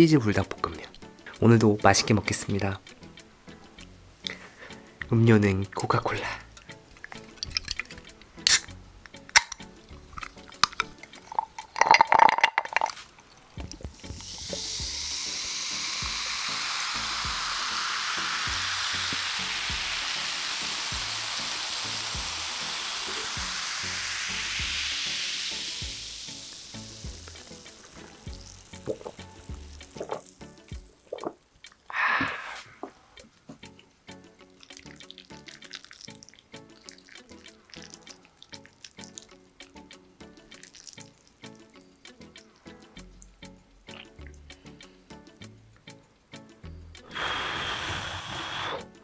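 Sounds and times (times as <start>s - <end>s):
soda fizzing: 6.9s - 8.7s, 9.3s - 32.6s, 34.6s - 39.4s, 40.3s - 41.6s, 47.1s - 49.0s
soda pouring into glass: 10.2s - 13.0s, 13.8s - 31.2s, 34.7s - 39.2s, 40.5s - 41.2s, 47.1s - 48.9s
glass clinking: 10.6s - 13.0s.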